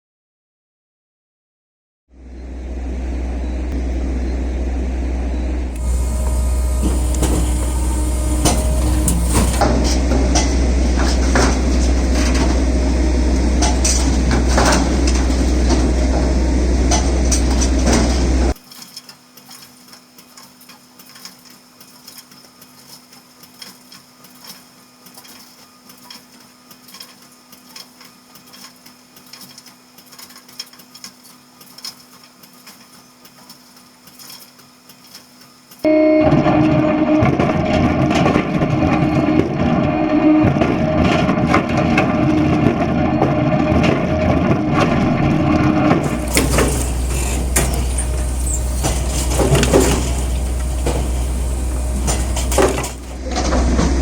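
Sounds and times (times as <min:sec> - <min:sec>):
faint steady hum: 0:02.2 - 0:18.6, 0:46.0 - 0:54.0
firewood processor droning: 0:02.2 - 0:18.6, 0:36.8 - 0:54.0
knocks and clatter: 0:46.0 - 0:54.0.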